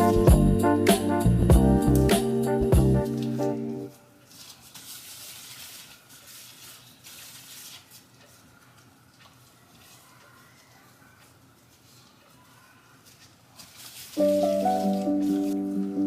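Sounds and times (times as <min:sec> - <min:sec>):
background music: 0:00.0 - 0:03.9, 0:14.2 - 0:16.0
water running: 0:04.3 - 0:08.5, 0:13.6 - 0:16.0.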